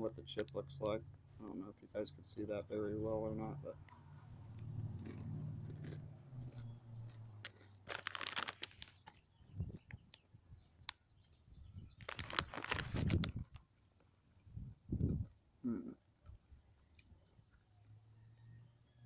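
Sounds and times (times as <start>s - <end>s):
corn chips crunching: 5.0s - 9.3s, 12.0s - 13.6s.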